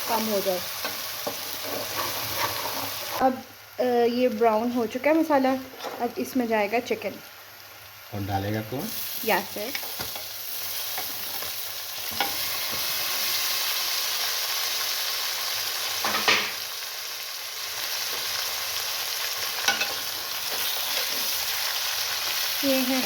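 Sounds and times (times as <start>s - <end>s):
chicken sizzling in hot oil: 0.0s - 23.0s
spoon scraping a pan: 0.8s - 3.2s, 12.1s - 12.8s, 19.6s - 21.4s.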